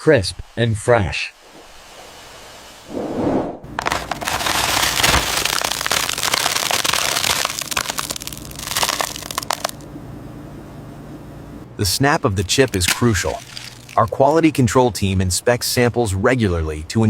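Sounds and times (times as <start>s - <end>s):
potato chips crunching: 3.7s - 9.8s, 12.4s - 14.3s.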